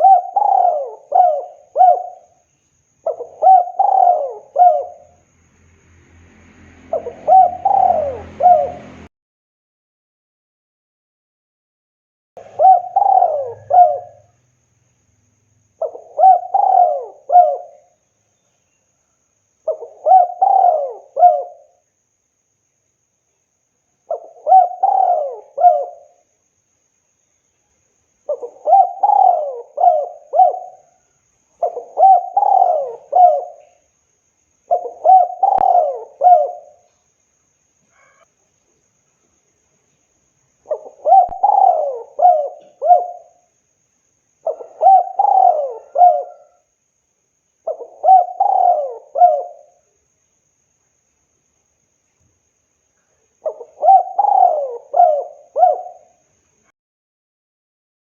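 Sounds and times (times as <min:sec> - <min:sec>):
dove cooing: 0:00.0 - 0:02.4, 0:03.0 - 0:05.2, 0:06.9 - 0:09.1, 0:12.4 - 0:14.4, 0:15.8 - 0:18.0, 0:19.7 - 0:21.8, 0:24.1 - 0:26.2, 0:28.3 - 0:31.0, 0:31.6 - 0:33.8, 0:34.7 - 0:36.9, 0:40.7 - 0:43.4, 0:44.4 - 0:46.7, 0:47.6 - 0:49.8, 0:53.4 - 0:56.2.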